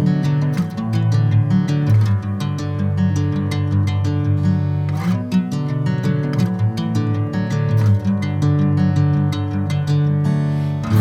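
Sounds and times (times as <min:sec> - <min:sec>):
soft acoustic guitar song: 0:00.0 - 0:11.0.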